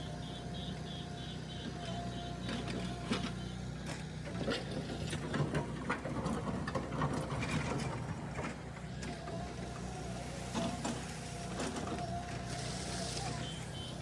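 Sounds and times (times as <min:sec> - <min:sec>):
diesel engine running: 0:00.0 - 0:14.0.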